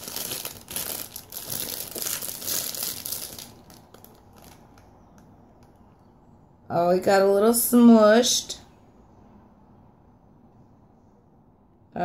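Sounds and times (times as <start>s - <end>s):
packaging crinkling: 0.0s - 5.8s.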